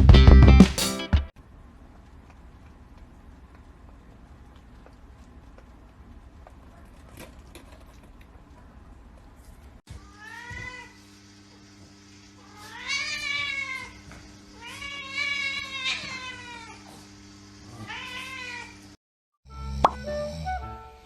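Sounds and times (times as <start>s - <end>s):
cat meowing: 17.8s - 18.7s.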